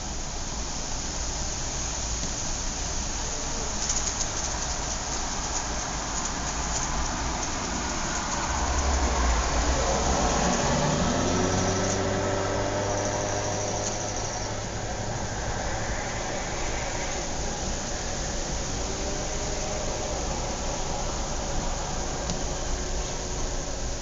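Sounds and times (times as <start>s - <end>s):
outdoor background hiss: 0.0s - 24.0s
car passing by: 6.1s - 24.0s.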